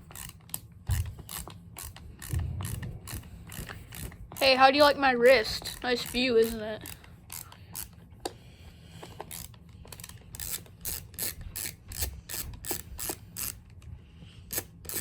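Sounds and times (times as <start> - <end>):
ratcheting screwdriver clicking: 9.0 - 13.6, 14.5 - 15.0.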